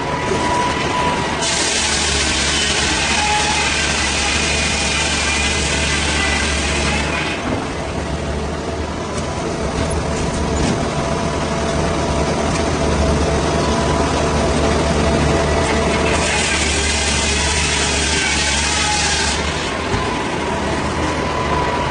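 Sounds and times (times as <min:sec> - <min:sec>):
heavy engine running: 0:00.0 - 0:21.9.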